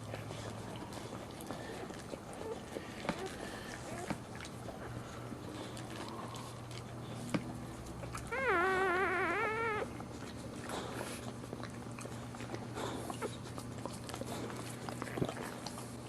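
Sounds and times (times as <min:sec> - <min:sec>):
dog whining: 0:01.2 - 0:06.7, 0:08.0 - 0:11.3.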